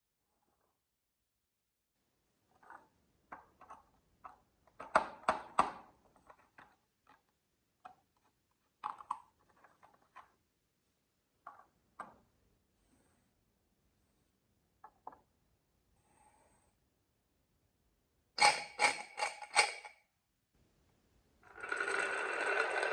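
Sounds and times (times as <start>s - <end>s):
marbles rattling down wooden run: 21.5s - 22.9s.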